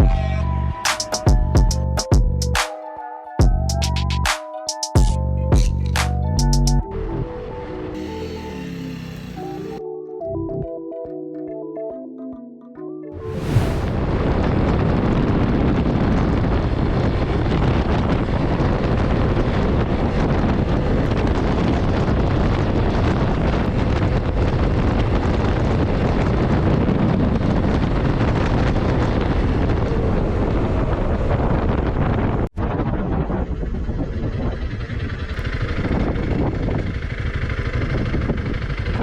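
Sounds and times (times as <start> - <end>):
motorcycle engine running: 8.0 - 9.8, 33.6 - 39.0
wind rush on microphone: 13.2 - 39.0.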